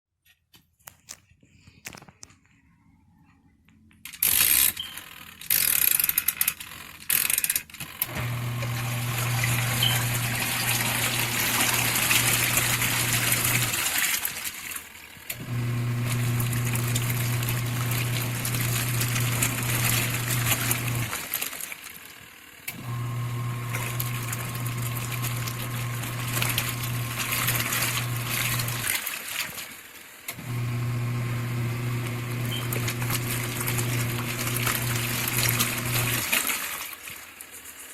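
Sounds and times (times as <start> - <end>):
washing machine motor humming: 8.0 - 21.9, 22.6 - 37.3
water churning in tub: 8.1 - 21.9, 22.8 - 29.8, 30.4 - 37.4.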